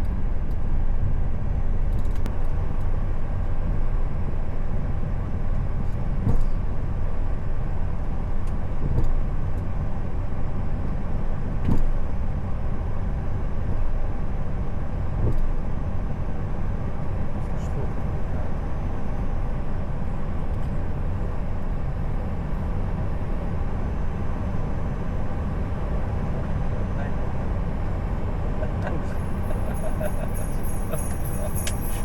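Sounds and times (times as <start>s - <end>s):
airflow and engine noise: 0.0s - 32.0s.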